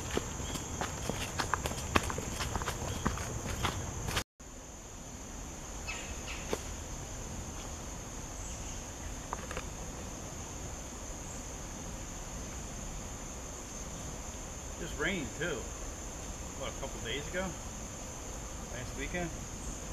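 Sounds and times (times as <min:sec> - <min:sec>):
footsteps on forest trail: 0:00.0 - 0:04.3
high-pitched insect chorus: 0:00.0 - 0:19.9.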